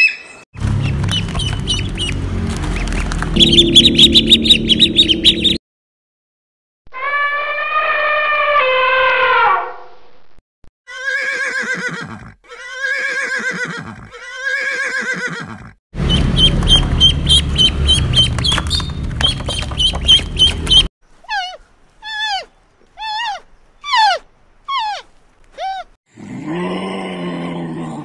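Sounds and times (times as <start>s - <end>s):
rapid repeated chirps: 3.4s - 5.6s
short falling chirps: 3.4s - 5.6s
long falling animal call: 6.9s - 9.6s.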